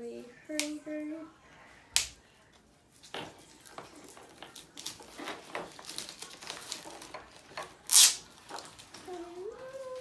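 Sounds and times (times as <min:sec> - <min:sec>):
plastic packaging rustling: 0:02.9 - 0:10.0.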